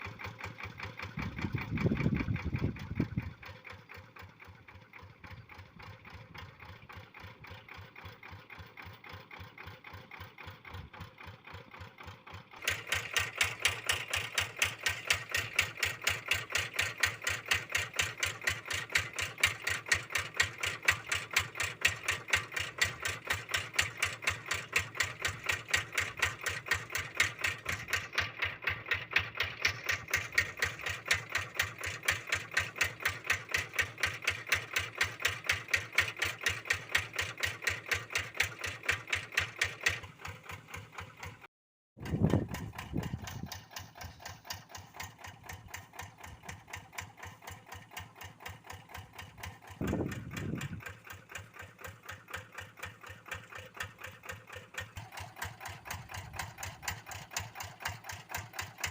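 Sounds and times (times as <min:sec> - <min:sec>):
diesel engine running: 0:00.0 - 0:08.0, 0:42.0 - 0:47.4, 0:48.0 - 0:58.9.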